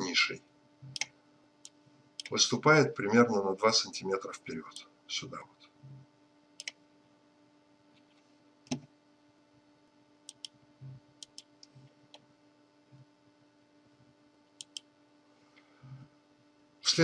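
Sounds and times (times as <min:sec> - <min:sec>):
faint steady hum: 0:00.0 - 0:17.0
computer mouse clicking: 0:00.9 - 0:02.4, 0:06.6 - 0:06.8, 0:10.3 - 0:10.6, 0:11.2 - 0:12.2, 0:14.6 - 0:14.9.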